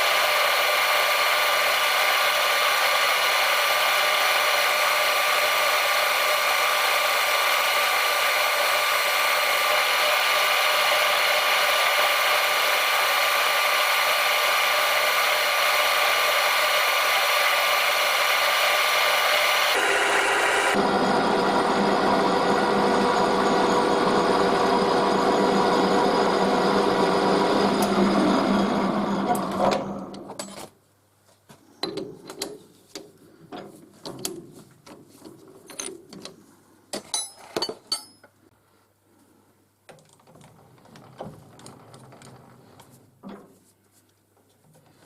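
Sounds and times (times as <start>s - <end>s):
machine tool running: 0.0s - 30.2s.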